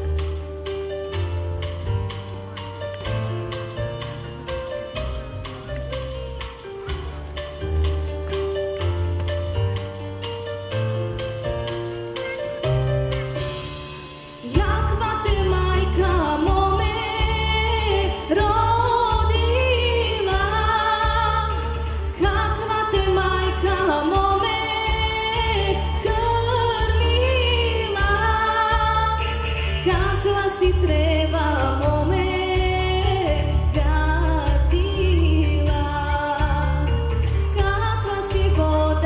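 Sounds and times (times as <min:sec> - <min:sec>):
instrumental music with pulsing bass: 0:00.0 - 0:39.0
woman singing folk song: 0:14.4 - 0:39.0.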